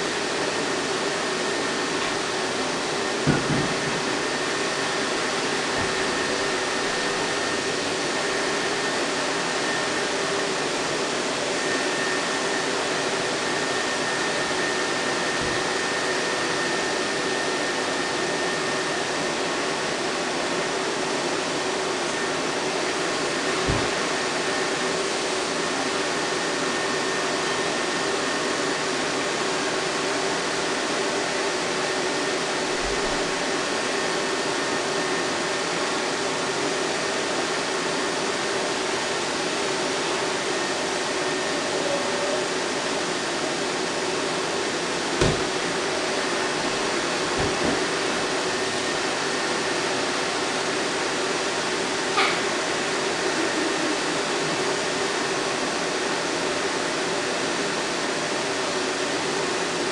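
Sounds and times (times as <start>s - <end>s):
vacuum cleaner running: 0.0s - 59.9s
low thump: 45.2s - 45.5s.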